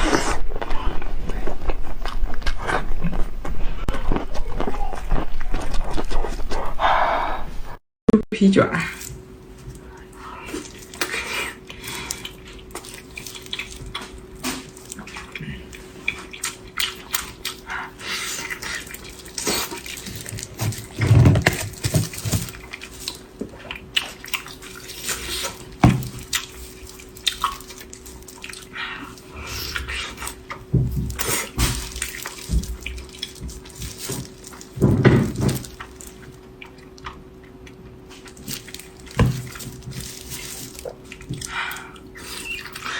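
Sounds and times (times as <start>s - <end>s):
faint steady hum: 0.0s - 42.9s
wet chewing and lip-smacking: 9.0s - 34.8s, 35.7s - 42.9s.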